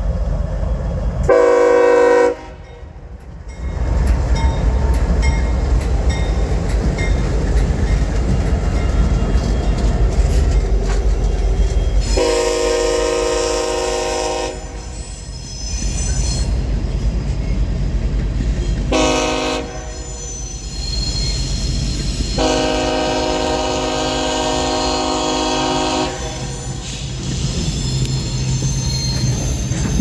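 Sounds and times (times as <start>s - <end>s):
train air horn chord: 1.3s - 2.6s, 12.1s - 14.8s, 18.9s - 20.2s, 22.4s - 26.8s.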